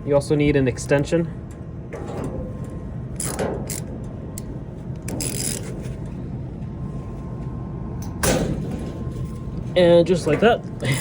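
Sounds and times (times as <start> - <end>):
steady low rumble: 0.0 - 11.0
wrench metallic scrapes and clinks: 3.2 - 3.9, 5.1 - 5.8.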